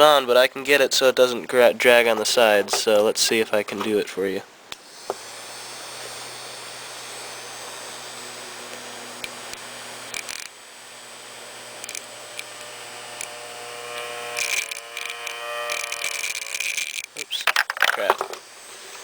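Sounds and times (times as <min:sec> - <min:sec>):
rattling clicks: 0:14.4 - 0:18.4.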